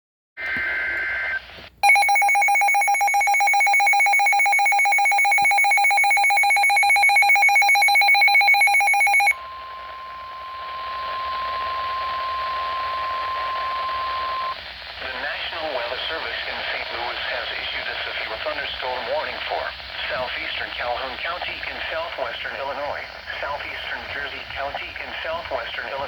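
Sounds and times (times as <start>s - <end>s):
harsh two-tone alert signal: 1.8s - 9.4s
steady single-pitch warning tone: 1.8s - 14.6s
radio hiss: 9.8s - 26.0s.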